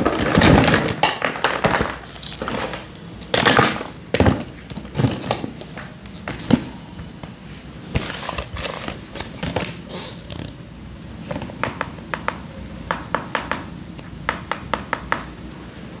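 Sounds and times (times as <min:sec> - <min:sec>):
plastic toys rustling and knocking: 0:00.0 - 0:05.6.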